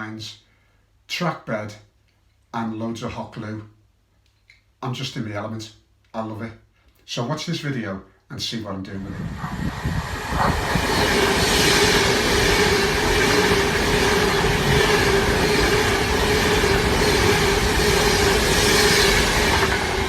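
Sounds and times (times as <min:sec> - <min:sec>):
train rumbling on rails: 0:09.0 - 0:20.0.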